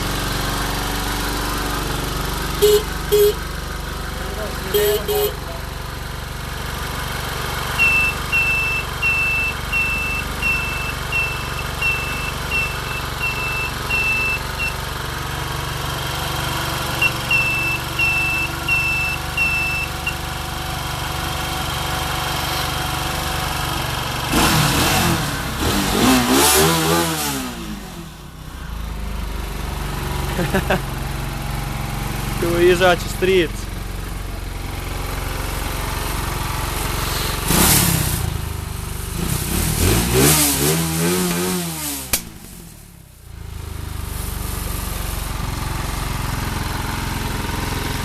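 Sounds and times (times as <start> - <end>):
quad engine running: 0.0 - 48.0
short high beeps: 2.6 - 3.4, 7.8 - 14.8, 17.0 - 20.2.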